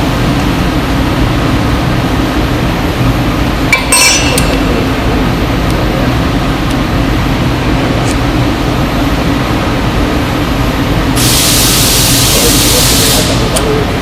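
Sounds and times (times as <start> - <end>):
loud machinery drone: 0.0 - 14.0
metal clinking against metal: 3.7 - 4.8.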